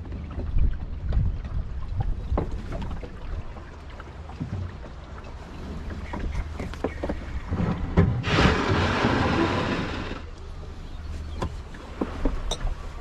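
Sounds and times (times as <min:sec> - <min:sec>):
knocks from boat: 0:00.0 - 0:03.3, 0:04.3 - 0:05.0, 0:05.7 - 0:09.9, 0:11.3 - 0:12.8
wind rumbling on microphone: 0:00.0 - 0:03.8, 0:05.4 - 0:13.0
rush of water: 0:00.0 - 0:13.0.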